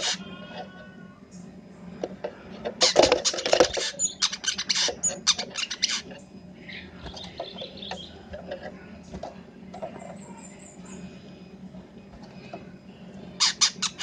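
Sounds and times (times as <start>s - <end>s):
bird singing: 2.8s - 8.4s, 9.9s - 11.2s, 13.2s - 14.0s.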